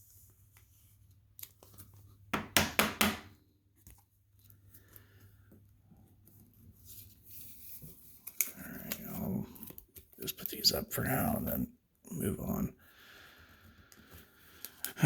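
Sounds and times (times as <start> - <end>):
cards and plastic rustling: 3.7 - 11.1.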